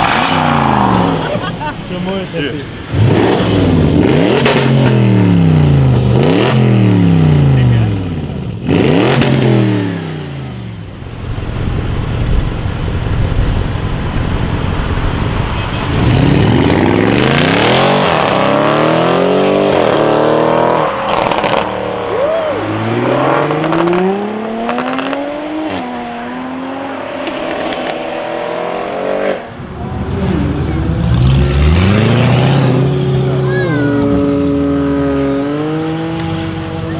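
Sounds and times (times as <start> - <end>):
exhaust cracks: 0.0 - 6.9, 10.8 - 26.0, 29.5 - 36.9
car engine revving: 0.0 - 36.9.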